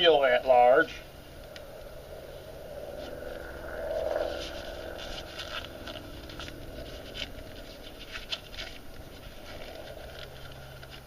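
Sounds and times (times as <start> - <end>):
glove crackling and snapping: 3.1 - 11.0.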